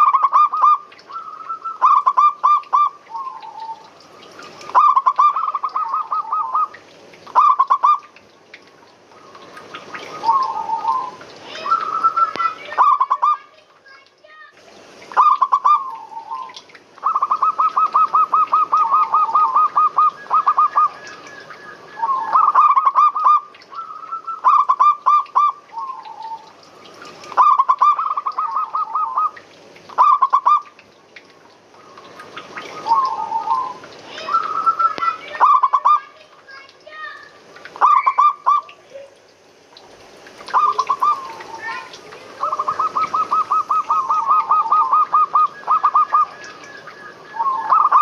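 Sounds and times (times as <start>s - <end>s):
dove cooing: 0.0s - 8.0s, 9.2s - 13.4s, 15.1s - 26.5s, 27.3s - 30.7s, 32.6s - 36.0s, 40.5s - 48.0s.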